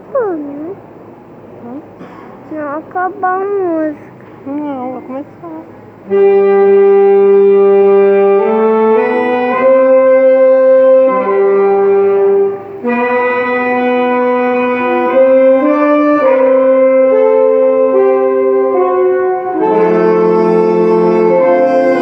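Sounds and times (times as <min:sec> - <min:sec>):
big band horns playing chords: 0:05.8 - 0:22.0.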